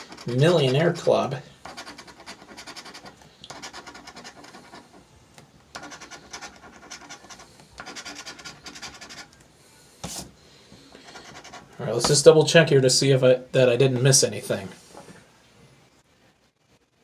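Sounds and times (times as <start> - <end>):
lottery ticket being scratched: 0.0 - 5.0, 5.8 - 9.4, 10.0 - 10.3.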